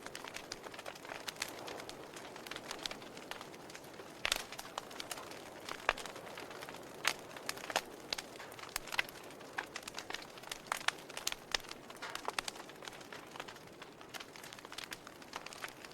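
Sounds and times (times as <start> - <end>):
logs popping and snapping: 0.0 - 15.9.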